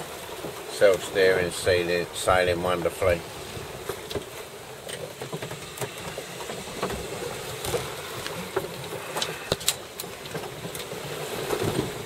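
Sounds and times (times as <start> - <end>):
rush of water and wind: 0.0 - 12.0
boat clicks and knocks: 3.8 - 12.0.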